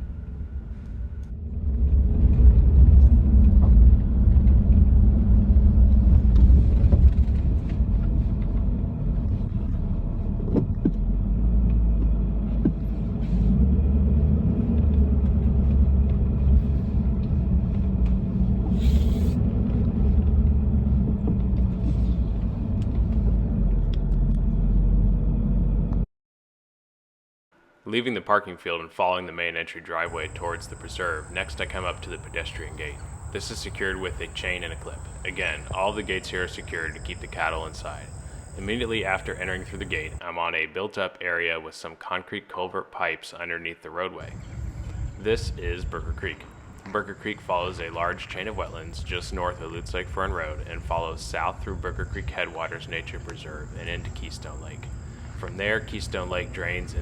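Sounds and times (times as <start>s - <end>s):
car engine and tyres rumbling: 0.0s - 26.0s, 30.1s - 40.2s, 44.2s - 57.0s.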